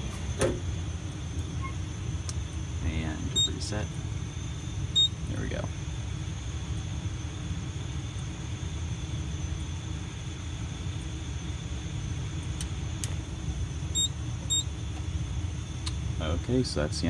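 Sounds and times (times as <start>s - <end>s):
low background rumble: 0.0s - 10.5s.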